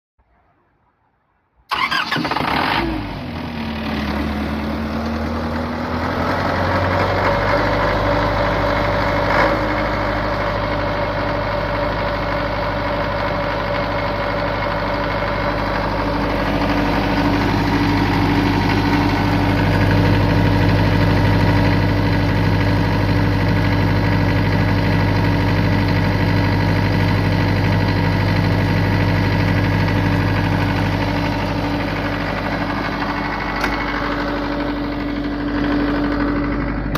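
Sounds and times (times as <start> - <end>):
diesel generator running: 1.7 - 36.9
single click: 33.6 - 33.8.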